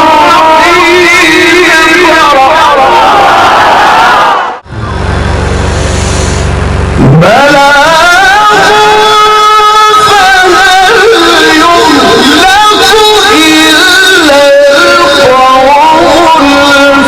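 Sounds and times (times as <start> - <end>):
man reciting melodically: 0.0 - 3.1, 7.0 - 17.0.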